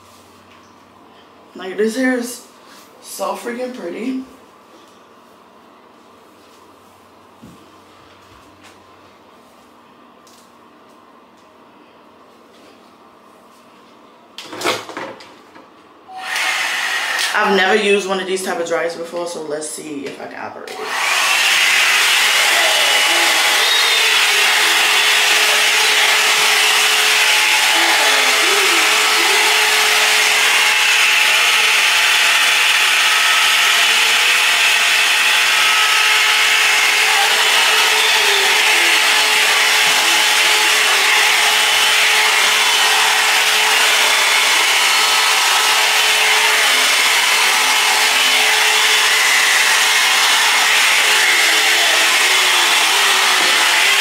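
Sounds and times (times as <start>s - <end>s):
blow dryer air rush: 16.1s - 17.7s, 20.7s - 54.0s.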